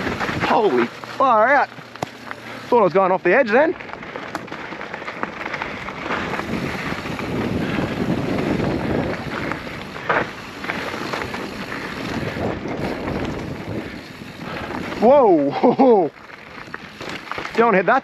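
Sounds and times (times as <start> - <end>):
bike tyres rattling on dirt: 0.0 - 18.0
wind on microphone: 6.0 - 15.1.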